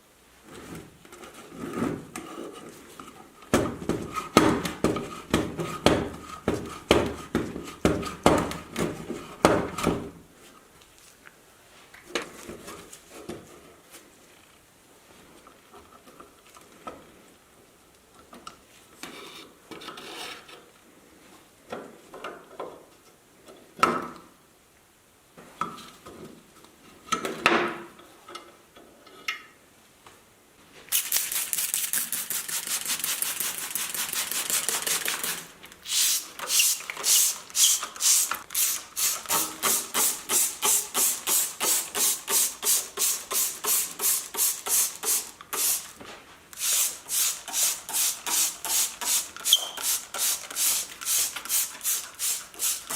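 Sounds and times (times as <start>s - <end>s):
hand scrubbing: 31.0s - 45.8s.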